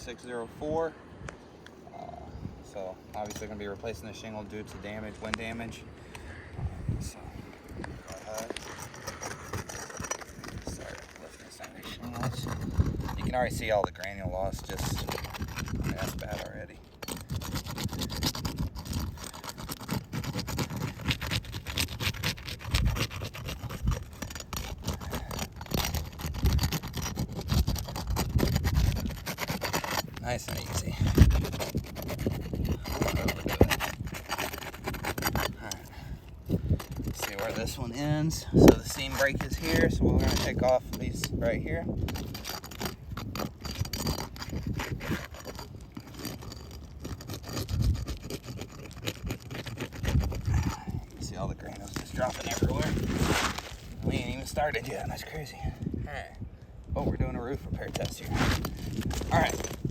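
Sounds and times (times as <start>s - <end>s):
roof shingles scraping and crackling: 7.4s - 55.4s, 57.5s - 59.9s
roof shingles scraping: 51.6s - 55.2s, 57.6s - 59.9s.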